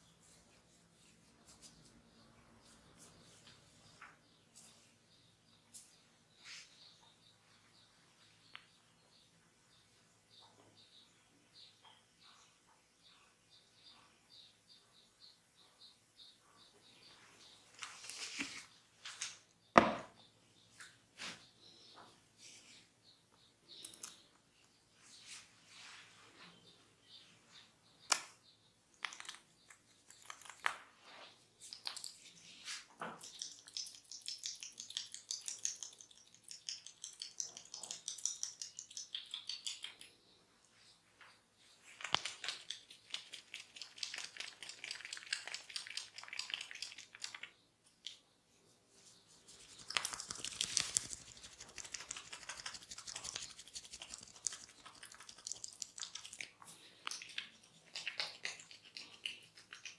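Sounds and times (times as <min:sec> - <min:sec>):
hands rubbing skin and hair: 0:49.0 - 0:59.9.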